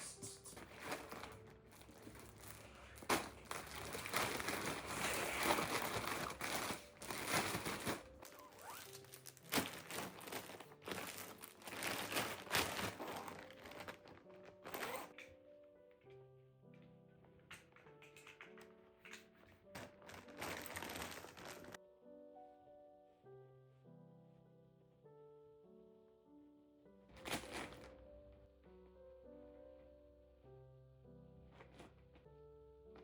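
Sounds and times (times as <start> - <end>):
crinkling rustling handling noise: 0.2 - 15.2, 17.5 - 21.8, 27.2 - 28.1.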